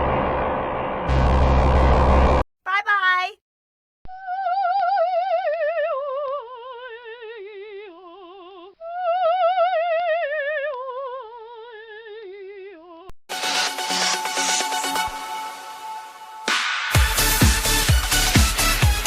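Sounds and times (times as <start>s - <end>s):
woman singing operatically: 4.1s - 13.1s.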